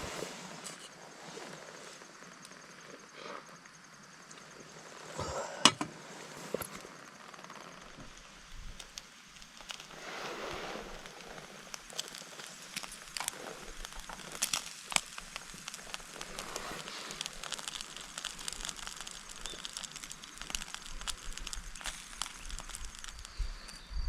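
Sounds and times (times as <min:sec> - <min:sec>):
campfire crackling: 0:00.0 - 0:23.9
sharp pops of fire: 0:05.1 - 0:23.9.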